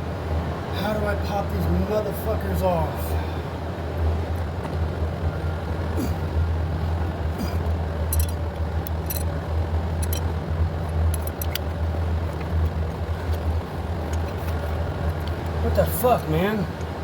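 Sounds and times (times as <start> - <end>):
steady low hum: 0.0 - 17.0
light metallic clicks and clinks: 8.1 - 9.4, 10.0 - 11.7.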